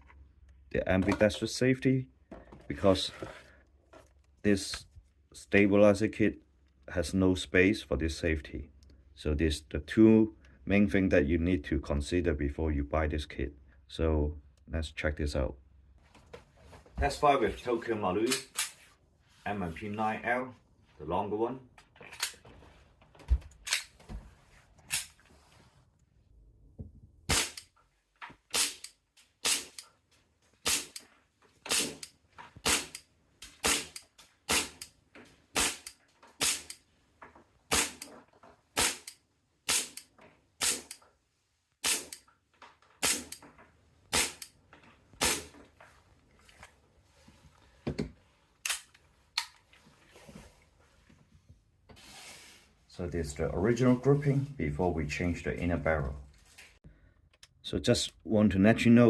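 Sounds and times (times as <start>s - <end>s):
airsoft pistol shots: 27.3s - 27.6s, 35.6s - 36.7s, 37.7s - 38.0s, 38.8s - 39.1s.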